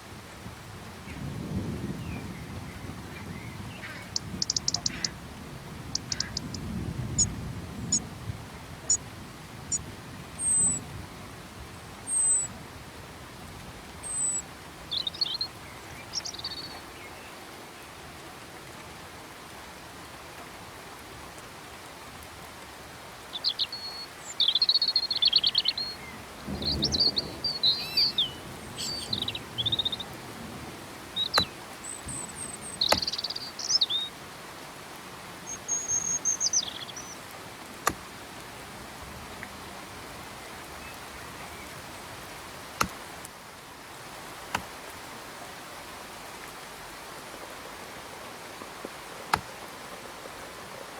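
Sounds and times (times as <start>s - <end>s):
rain hissing: 0.0s - 50.9s
songbirds singing: 1.0s - 12.6s, 13.9s - 18.0s, 23.2s - 43.3s
drip-like ticks: 3.8s - 5.2s, 5.9s - 7.3s.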